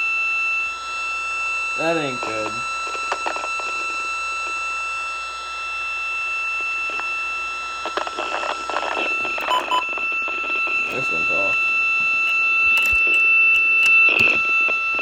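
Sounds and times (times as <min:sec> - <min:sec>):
high-pitched electronic tone: 0:08.2 - 0:15.0
short beeps: 0:09.1 - 0:11.6
clicks: 0:12.0 - 0:14.8.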